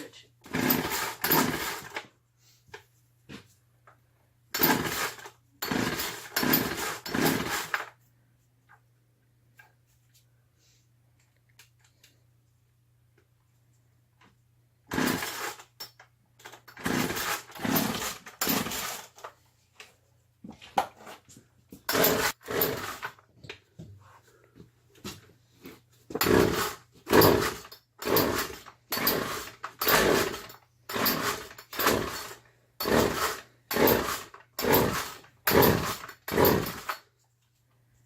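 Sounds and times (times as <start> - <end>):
chainsaw pull-start attempts: 0.4 - 2.1, 4.5 - 7.9, 14.9 - 19.3, 21.8 - 23.2, 26.1 - 37.1.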